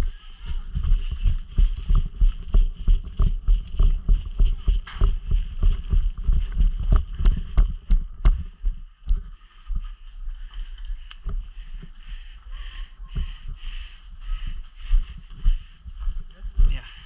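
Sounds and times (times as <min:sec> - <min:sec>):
wind noise on microphone: 0:00.0 - 0:11.6
running footsteps thudding: 0:00.4 - 0:17.0.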